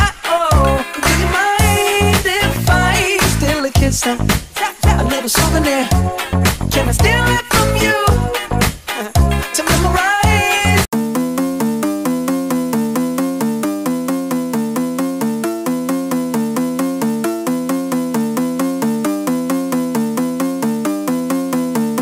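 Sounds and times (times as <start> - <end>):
pop song: 0.0 - 10.9
fast repeating electronic melody: 9.1 - 22.0.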